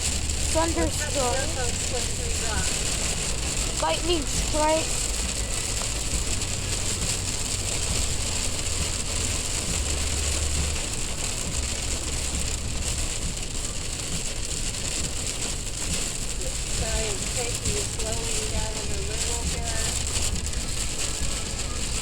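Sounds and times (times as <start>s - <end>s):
car driving rumble: 0.0s - 22.0s
heavy rain on car roof: 0.0s - 22.0s.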